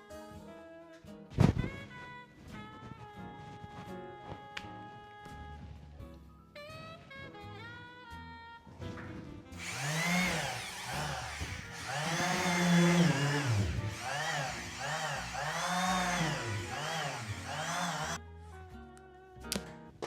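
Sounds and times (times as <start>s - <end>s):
background music: 0.0s - 20.0s
power tool motor cutting in and out: 9.6s - 18.2s.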